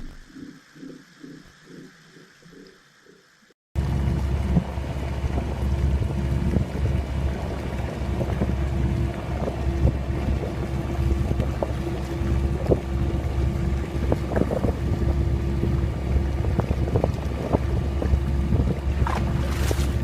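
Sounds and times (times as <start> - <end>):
mid-pitched hum: 0.0 - 3.2, 3.8 - 20.0
low underwater rumble: 3.8 - 20.0.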